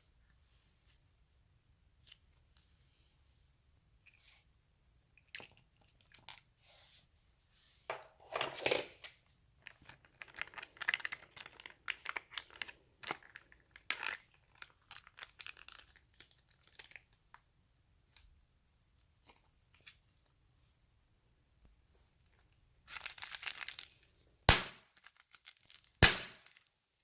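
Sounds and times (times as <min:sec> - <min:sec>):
crinkling and tearing materials: 0:09.6 - 0:17.1, 0:22.9 - 0:24.1, 0:24.8 - 0:26.8.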